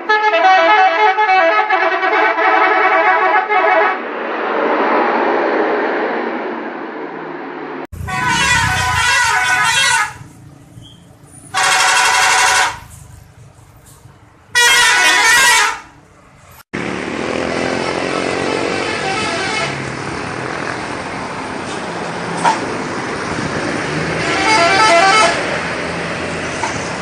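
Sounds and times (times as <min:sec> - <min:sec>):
musical air horn blasts: 0:00.0 - 0:04.0, 0:08.0 - 0:10.4, 0:11.5 - 0:13.0, 0:14.5 - 0:15.9, 0:18.9 - 0:19.8, 0:24.2 - 0:25.5.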